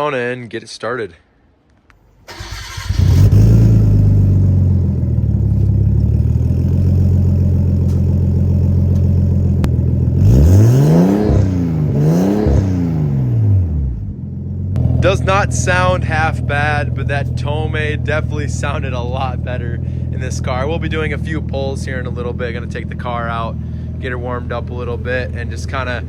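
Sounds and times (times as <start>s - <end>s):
car engine idling and revving: 2.5s - 26.0s.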